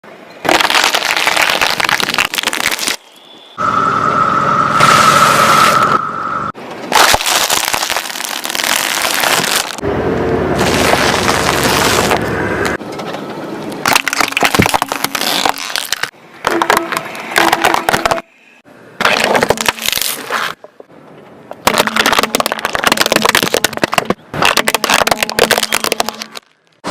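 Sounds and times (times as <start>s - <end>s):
objects crushed by car: 13.8s - 18.3s, 19.0s - 20.6s, 21.6s - 26.9s.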